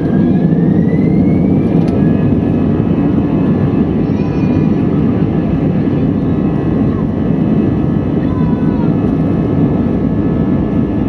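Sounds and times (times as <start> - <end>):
jet engines whining from cabin: 0.0 - 11.0.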